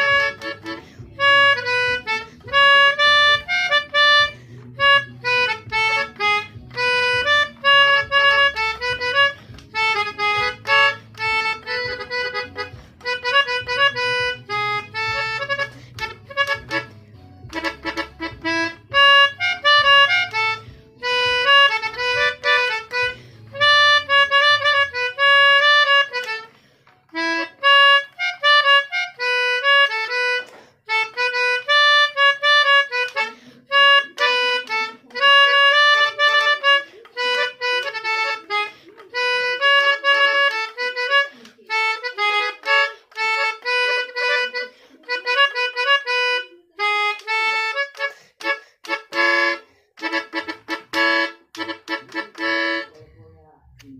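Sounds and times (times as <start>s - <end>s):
low bass line: 0.0s - 26.1s, 50.2s - 53.9s
melodica playing fast tune: 0.0s - 53.0s.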